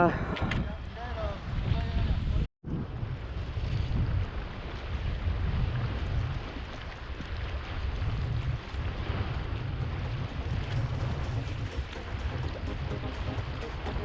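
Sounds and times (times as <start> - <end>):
wind buffeting microphone: 0.0 - 13.6
sea surf on rocks: 4.1 - 13.9.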